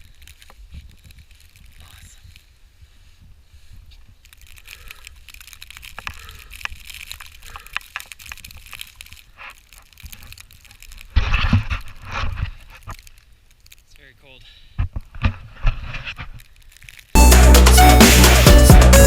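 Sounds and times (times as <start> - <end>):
deep snow crunching: 0.0 - 7.6.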